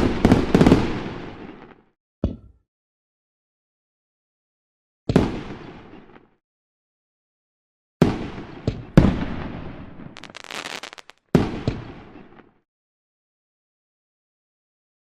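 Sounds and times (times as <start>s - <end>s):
fireworks banging: 10.2s - 11.2s
fireworks crackling: 10.2s - 11.2s.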